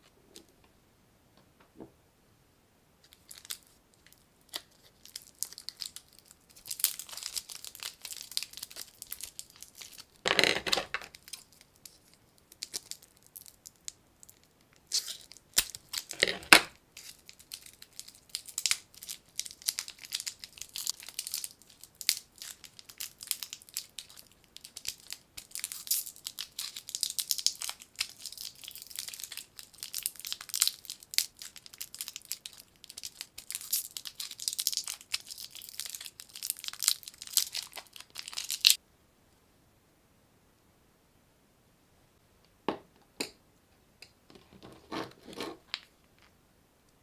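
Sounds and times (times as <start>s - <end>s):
plastic wrappers crinkling: 3.1s - 38.8s.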